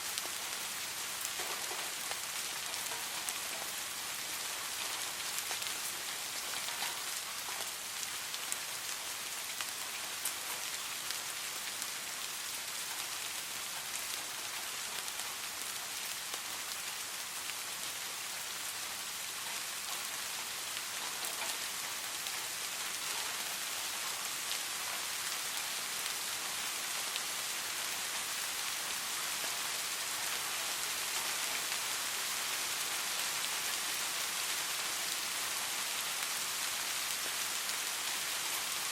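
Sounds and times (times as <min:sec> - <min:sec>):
soft rain falling: 0:00.0 - 0:38.9.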